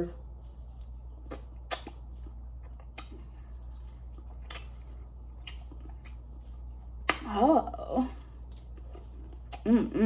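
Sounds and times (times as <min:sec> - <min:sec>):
person chewing food: 0:00.1 - 0:10.0
wet mouth clicks: 0:01.2 - 0:02.0, 0:02.7 - 0:03.8, 0:04.4 - 0:04.7.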